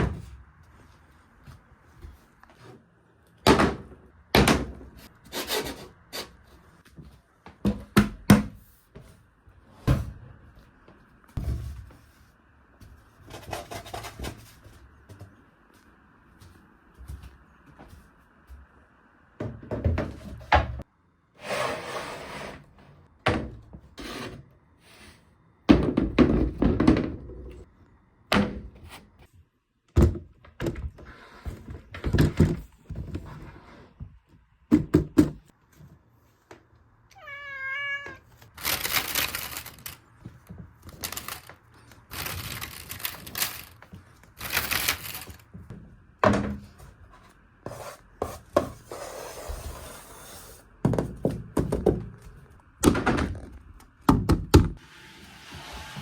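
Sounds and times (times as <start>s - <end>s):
cat meowing: 37.1s - 38.4s.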